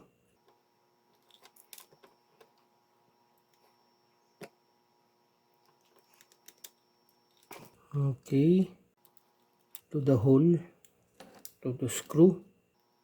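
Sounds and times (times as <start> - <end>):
small metal parts clicking: 1.2 - 2.0, 5.8 - 7.7.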